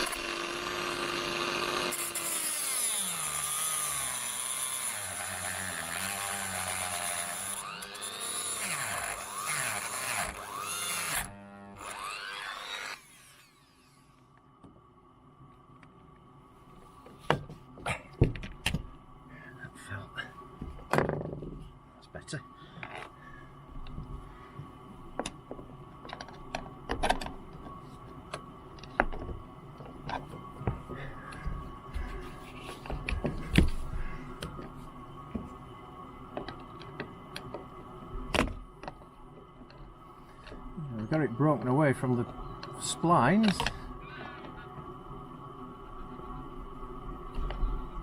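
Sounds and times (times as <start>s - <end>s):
rotary tool motor whine: 0.0s - 14.4s.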